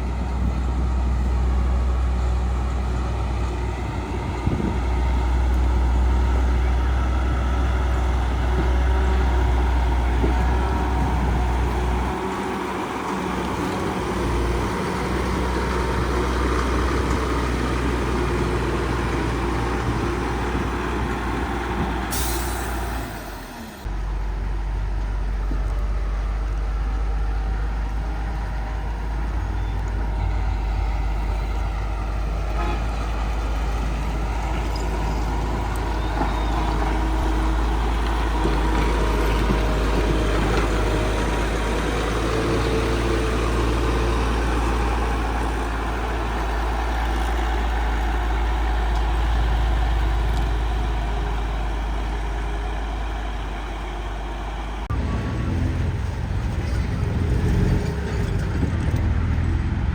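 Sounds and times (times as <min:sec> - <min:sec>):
heavy diesel engines: 0:00.0 - 0:59.9.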